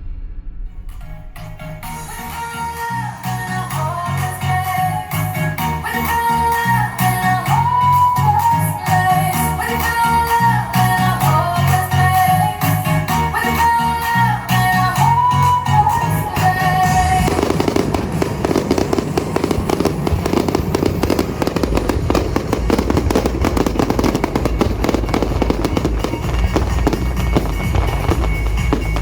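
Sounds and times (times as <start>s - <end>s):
deep low rumble: 0.0s - 2.5s, 15.2s - 29.0s
fireworks bursts and crackles: 0.0s - 29.0s
music: 0.7s - 29.0s.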